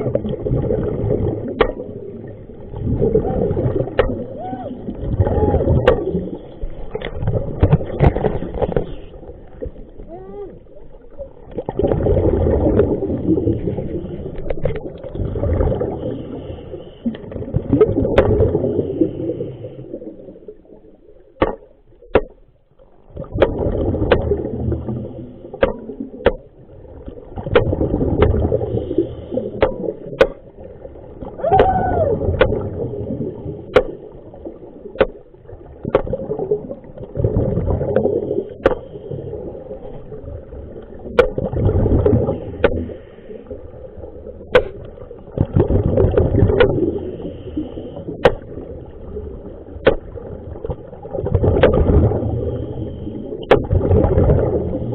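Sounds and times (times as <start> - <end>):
water sloshing and gurgling: 0.0 - 54.9
sharp clicks and knocks: 25.6 - 26.5, 33.7 - 34.0, 44.5 - 45.0.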